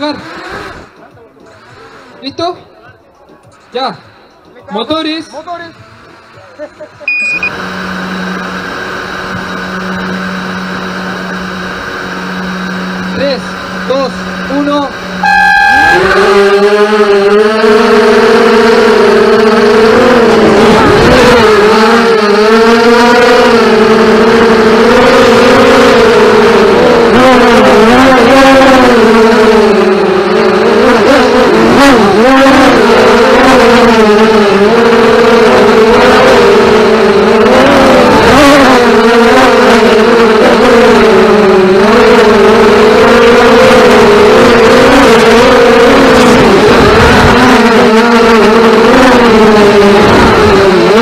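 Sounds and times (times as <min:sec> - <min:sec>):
racing drones buzzing: 0:00.0 - 0:51.0.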